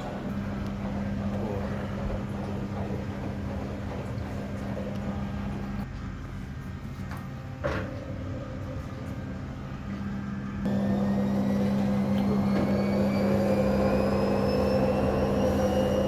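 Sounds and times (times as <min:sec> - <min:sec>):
washing machine motor hum: 0:00.0 - 0:05.9, 0:10.6 - 0:16.0
rising whine of spinning drum: 0:10.7 - 0:16.0.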